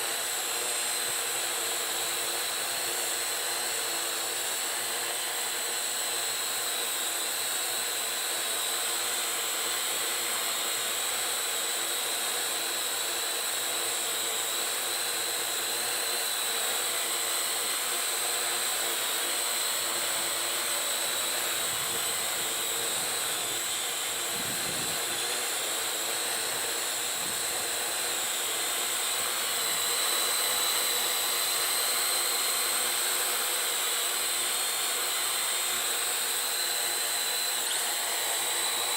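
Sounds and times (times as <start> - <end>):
drone propellers whining: 18.0 - 38.9.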